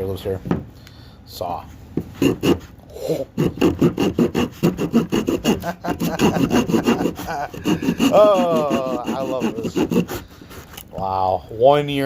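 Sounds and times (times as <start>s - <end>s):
small saw blade sawing: 2.2s - 2.7s, 3.3s - 10.8s.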